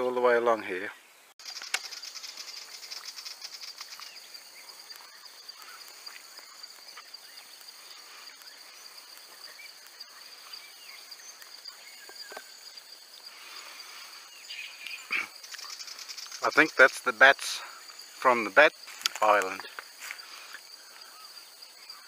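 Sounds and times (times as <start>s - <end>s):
high-pitched insect chorus: 0.0s - 22.0s.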